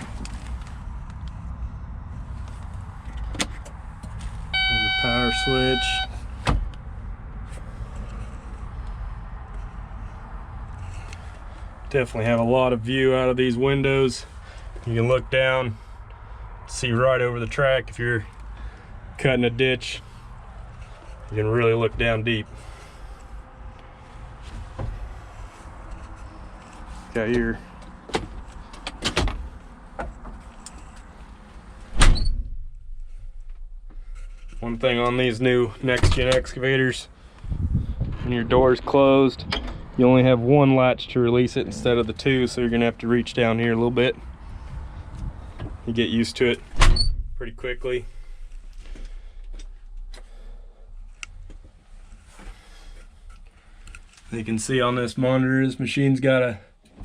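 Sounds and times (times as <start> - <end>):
cab door clicks and knocks: 28.1 - 29.4
door shutting with heavy thud: 31.9 - 32.6, 36.0 - 36.4, 46.7 - 47.4.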